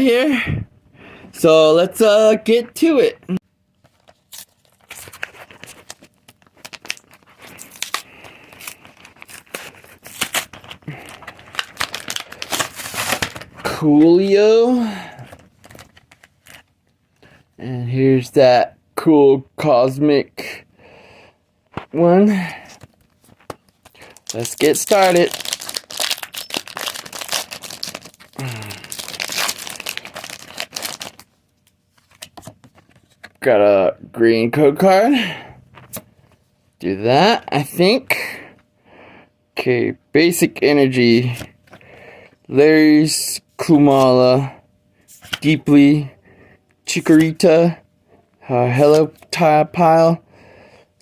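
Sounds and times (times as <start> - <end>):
card packaging tearing and crumpling: 3.9 - 13.7, 14.8 - 16.7, 22.7 - 31.3.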